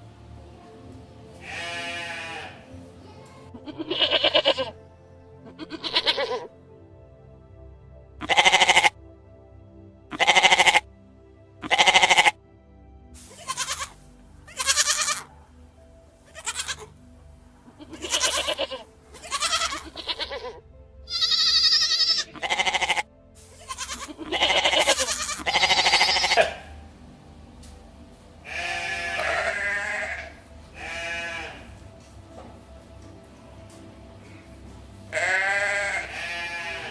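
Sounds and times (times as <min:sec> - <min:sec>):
goats bleating: 0:01.4 - 0:02.7, 0:03.6 - 0:04.8, 0:05.5 - 0:06.5, 0:08.2 - 0:09.0, 0:10.1 - 0:10.8, 0:11.6 - 0:12.4, 0:13.3 - 0:15.3, 0:16.3 - 0:16.9, 0:17.8 - 0:26.7, 0:28.4 - 0:31.8, 0:35.1 - 0:36.9.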